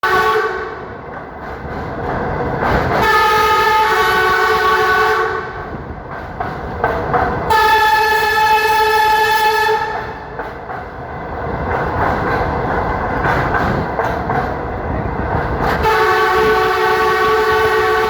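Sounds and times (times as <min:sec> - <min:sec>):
train horn blasts: 0:00.0 - 0:00.9, 0:03.0 - 0:05.7, 0:07.5 - 0:10.3, 0:15.8 - 0:18.0
moving train rumble and clickety-clack: 0:00.0 - 0:18.0.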